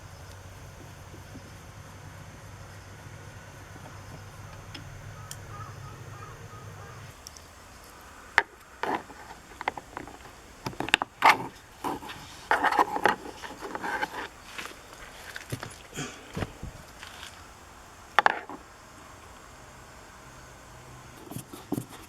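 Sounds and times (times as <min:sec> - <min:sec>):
parts clicking and rattling: 0:00.0 - 0:17.5.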